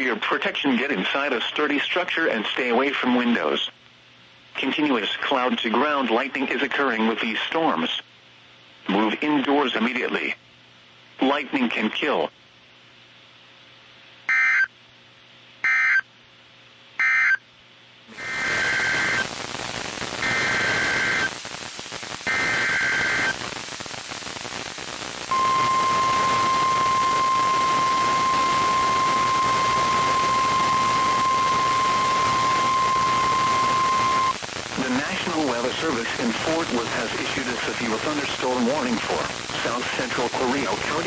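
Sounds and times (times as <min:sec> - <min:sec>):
short squawking data bursts: 0:14.3 - 0:14.7, 0:15.6 - 0:16.0, 0:17.0 - 0:17.4
steady alarm tone: 0:18.1 - 0:19.3, 0:20.2 - 0:21.3, 0:22.3 - 0:23.4, 0:25.3 - 0:34.4
radio static: 0:18.1 - 0:41.0.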